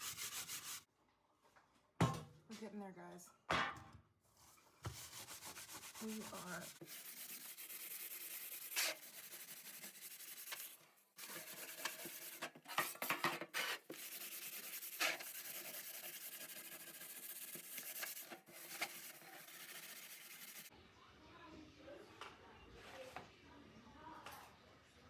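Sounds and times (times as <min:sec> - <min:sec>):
brush scrubbing metal: 0:00.0 - 0:00.8, 0:04.9 - 0:20.7.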